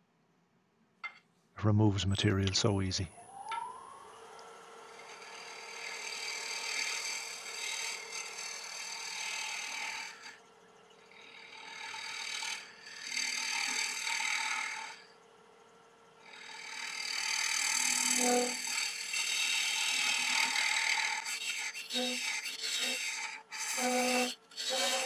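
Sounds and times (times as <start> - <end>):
lathe humming: 3.4 - 15.6, 16.2 - 25.0
tool scraping wood: 5.0 - 10.4, 11.3 - 15.0, 16.3 - 25.0.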